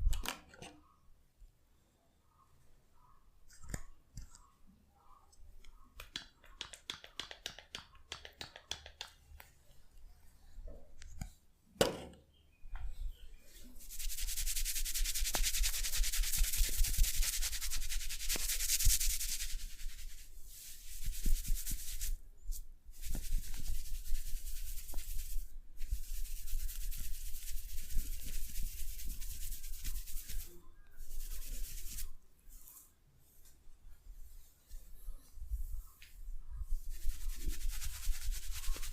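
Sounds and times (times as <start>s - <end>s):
hands rubbing through hair: 6.0s - 9.5s, 13.8s - 33.5s, 35.6s - 38.9s.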